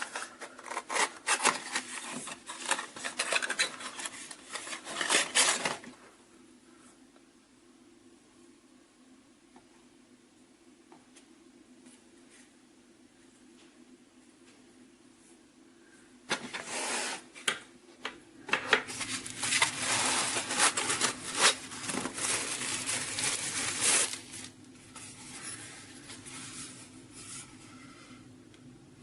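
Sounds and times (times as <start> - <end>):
rustling and rubbing of handled things: 0.0 - 6.2, 16.3 - 17.4, 18.4 - 28.1
low steady hum: 0.0 - 16.7, 17.3 - 29.0.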